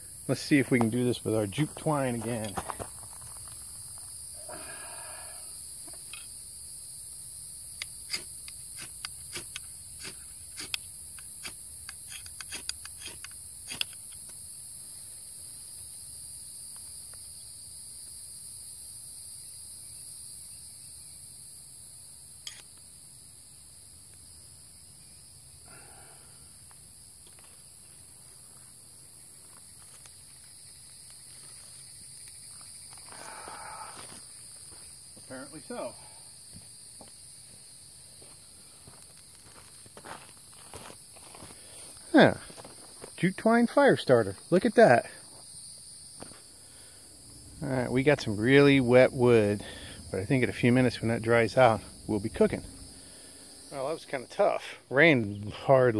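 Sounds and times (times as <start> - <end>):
high insect buzz: 0.0 - 55.9
soft breathy sounds: 33.1 - 34.2, 49.6 - 50.2.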